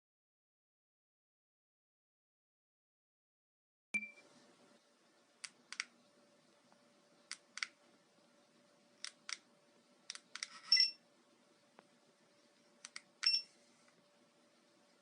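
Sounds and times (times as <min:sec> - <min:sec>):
short electronic beep: 0:04.0 - 0:04.2.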